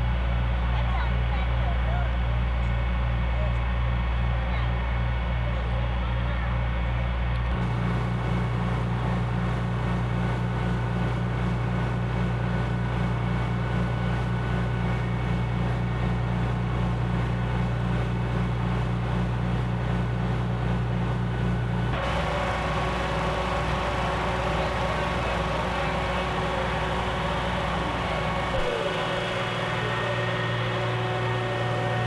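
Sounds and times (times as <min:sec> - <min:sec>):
low mechanical hum: 0:00.0 - 0:32.0
higher hum: 0:10.7 - 0:32.0.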